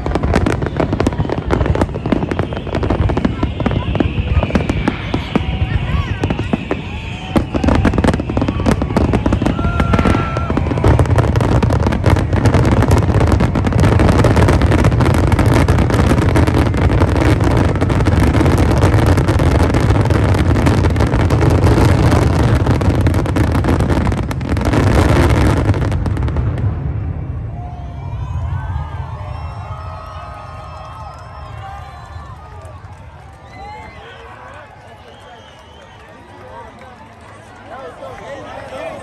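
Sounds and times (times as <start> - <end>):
fireworks barrage: 0.0 - 34.3.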